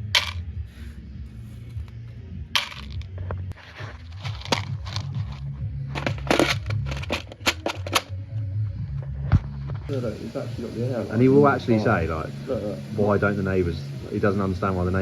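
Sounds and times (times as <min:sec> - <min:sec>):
steady low hum: 0:00.0 - 0:15.0
hand tools clattering: 0:06.0 - 0:08.1.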